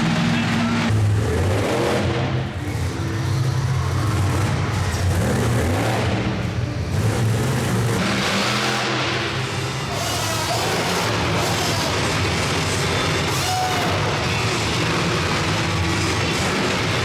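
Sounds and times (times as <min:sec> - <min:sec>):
large vehicle engine revving: 0:00.0 - 0:17.0.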